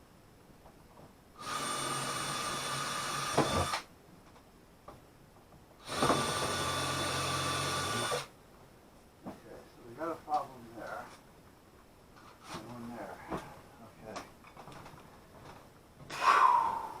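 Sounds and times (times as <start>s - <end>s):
power drill whining: 1.4s - 3.8s, 5.8s - 8.3s.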